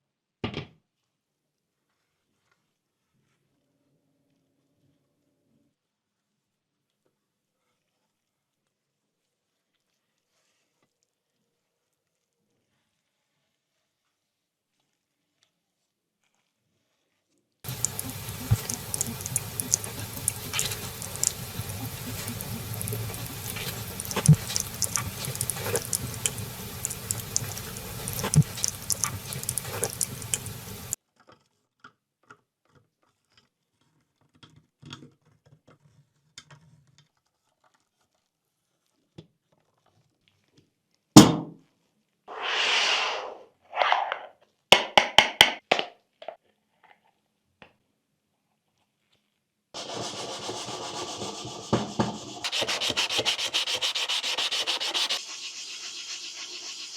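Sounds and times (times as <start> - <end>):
faint ticks: 17.7 - 31.0
rubbing and scraping: 17.7 - 31.0, 49.8 - 56.9
short hiss: 17.7 - 31.0.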